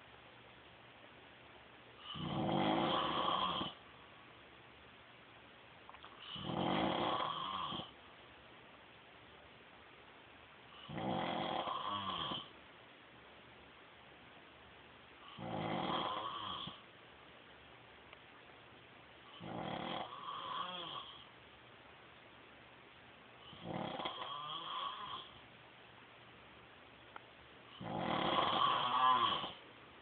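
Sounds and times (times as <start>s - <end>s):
man snoring: 2.0s - 3.8s, 6.2s - 7.9s, 10.8s - 12.5s, 15.3s - 16.8s, 19.3s - 21.2s, 23.5s - 25.3s, 27.8s - 29.6s.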